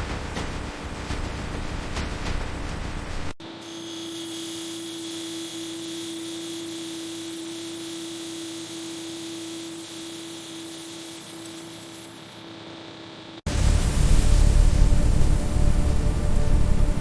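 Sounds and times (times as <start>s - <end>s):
hiss: 0.0s - 17.0s
steady mid-pitched hum: 12.5s - 17.0s.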